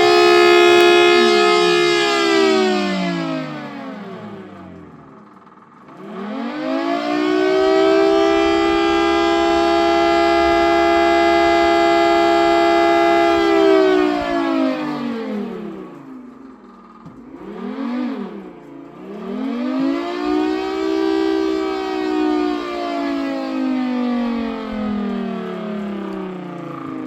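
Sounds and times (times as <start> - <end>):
siren winding wail: 0.0 - 27.0
shop vacuum blowing air: 6.6 - 14.7.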